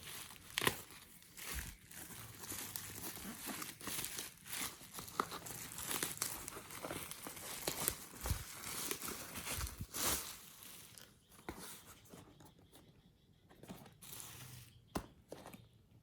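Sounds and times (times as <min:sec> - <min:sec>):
packaging tearing: 0:00.0 - 0:11.0
packaging crinkling and rustling: 0:00.0 - 0:12.1.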